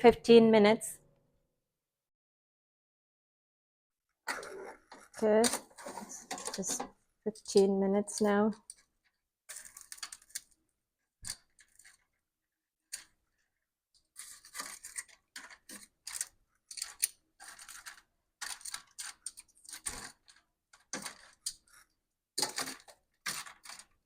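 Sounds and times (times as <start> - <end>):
utensils scraping air fryer basket: 4.6 - 7.4.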